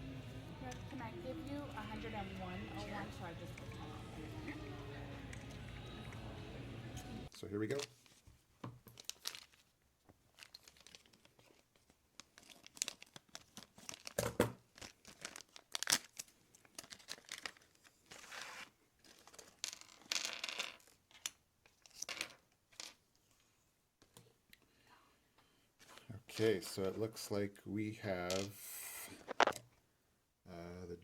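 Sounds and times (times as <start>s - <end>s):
plastic wrapper tearing and crinkling: 8.9s - 9.6s, 10.3s - 11.6s, 12.2s - 20.1s.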